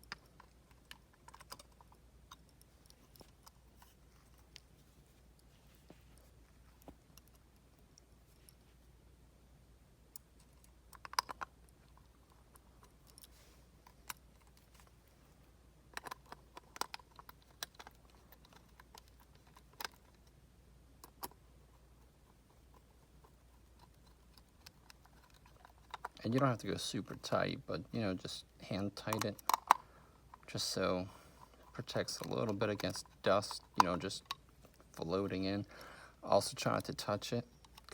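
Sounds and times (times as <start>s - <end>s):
screwdriver and plastic parts clicking: 0.0s - 4.7s, 15.9s - 20.3s, 23.8s - 26.3s, 28.8s - 30.8s, 31.6s - 35.5s, 36.7s - 37.9s.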